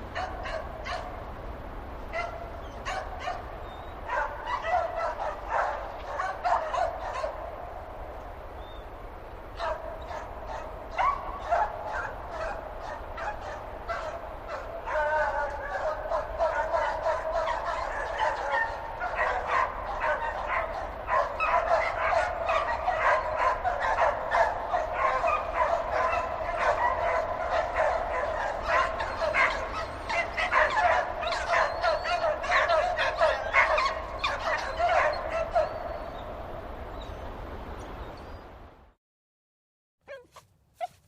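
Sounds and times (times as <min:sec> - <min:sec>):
dogs barking: 0:00.0 - 0:01.2, 0:02.1 - 0:07.8, 0:09.5 - 0:36.3, 0:40.1 - 0:41.0.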